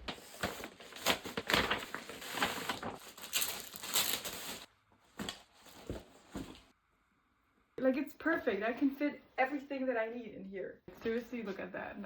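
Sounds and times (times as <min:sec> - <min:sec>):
packaging rustling and tearing: 0:00.0 - 0:06.6.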